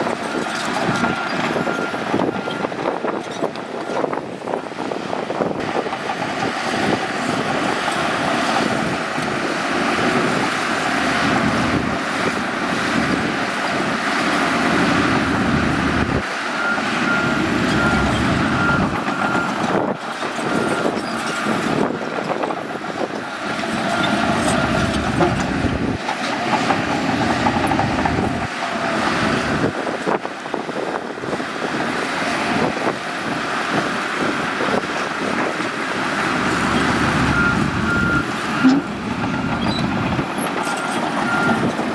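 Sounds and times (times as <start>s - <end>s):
bulldozer diesel engine under load: 0.0s - 41.9s
track clatter: 5.6s - 30.2s, 35.2s - 41.9s
reversing alarm beeping: 15.2s - 19.8s, 36.8s - 41.8s.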